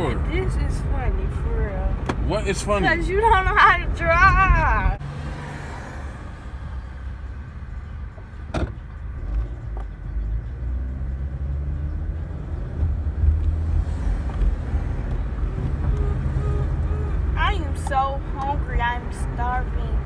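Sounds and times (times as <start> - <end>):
car engine and road rumble: 0.0 - 20.0.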